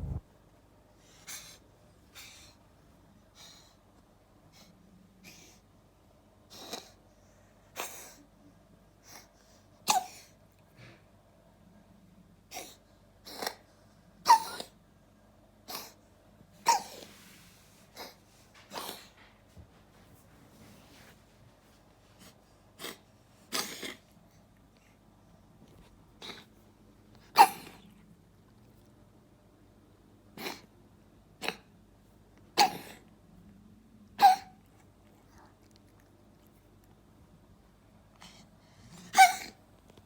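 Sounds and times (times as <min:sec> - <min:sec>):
cat coughing: 0:09.8 - 0:10.3, 0:27.3 - 0:27.9, 0:32.6 - 0:33.0, 0:34.2 - 0:34.6, 0:39.0 - 0:39.6.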